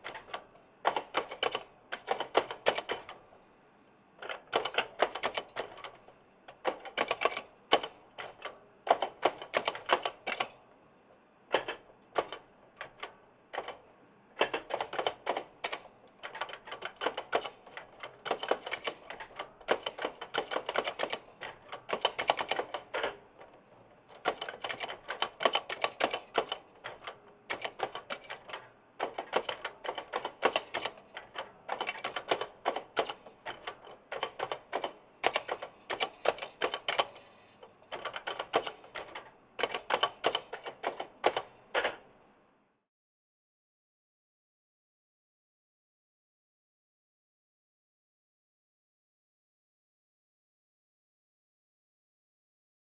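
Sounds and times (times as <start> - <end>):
clicky mechanical keyboard typing: 0.0 - 3.2, 4.2 - 10.6, 11.5 - 13.8, 14.4 - 42.0.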